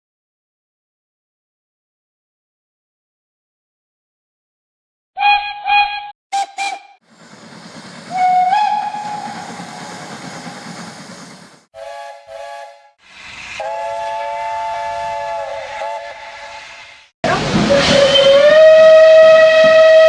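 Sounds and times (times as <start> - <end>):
steam locomotive whistle: 5.2 - 7.0, 8.1 - 10.8, 11.8 - 20.0
steam hissing: 6.4 - 19.9.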